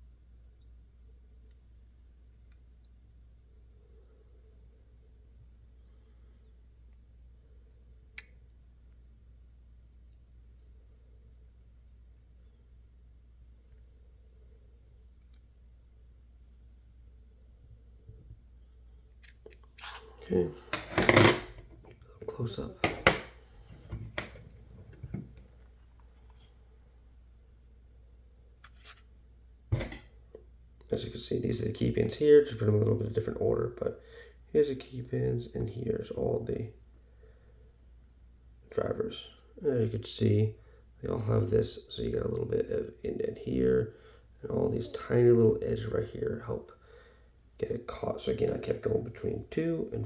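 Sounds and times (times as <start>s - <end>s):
metal lock parts handled: 18.7s - 22.0s, 22.7s - 25.4s
handling thump: 29.7s - 30.1s.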